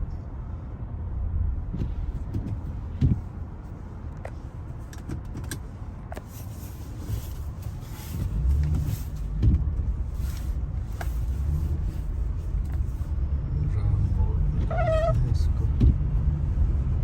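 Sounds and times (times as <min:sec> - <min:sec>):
engine and tyres rumbling on snow: 0:00.0 - 0:17.0
thump inside car: 0:01.7 - 0:03.3, 0:08.7 - 0:09.9, 0:15.7 - 0:16.1.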